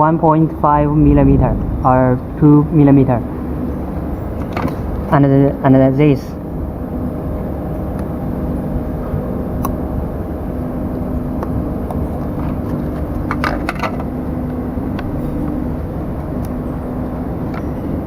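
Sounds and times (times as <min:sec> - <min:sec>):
low background rumble: 0:00.0 - 0:07.5
faint hum: 0:00.0 - 0:13.4.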